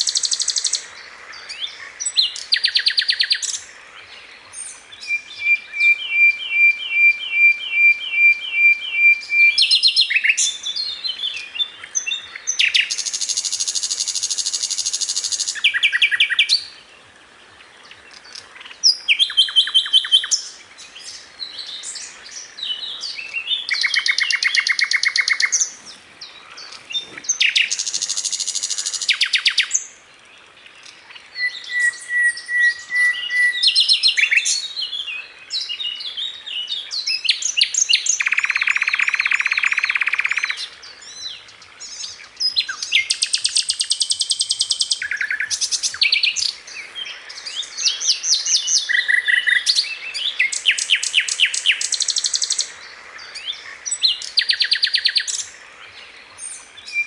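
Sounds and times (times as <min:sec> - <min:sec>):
bird trilling and chirping: 0:37.1 - 0:40.6.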